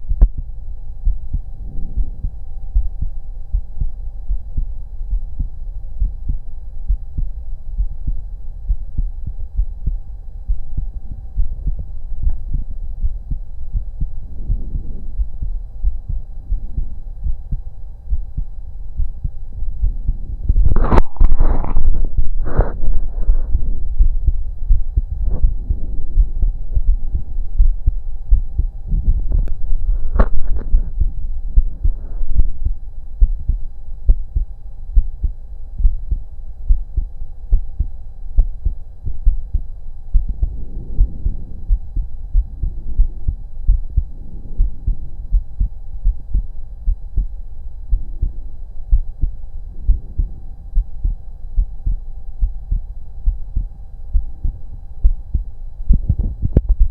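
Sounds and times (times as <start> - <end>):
faint steady hum: 0.0 - 56.9
heartbeat through stethoscope: 0.0 - 56.9
scratchy rubbing noises: 20.7 - 23.9, 29.3 - 31.0.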